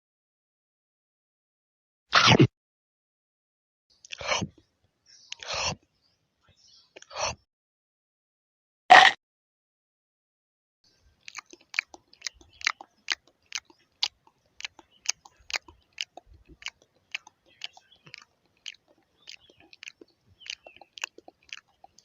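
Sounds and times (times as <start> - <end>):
person chewing food noisily: 4.0 - 4.7, 11.1 - 22.0.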